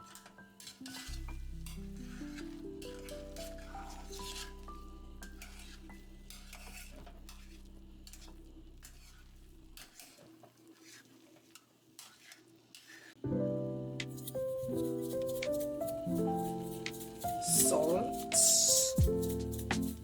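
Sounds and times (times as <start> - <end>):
background music: 0.0 - 7.5, 13.2 - 20.0
spoon stirring and scraping pot: 0.1 - 13.2.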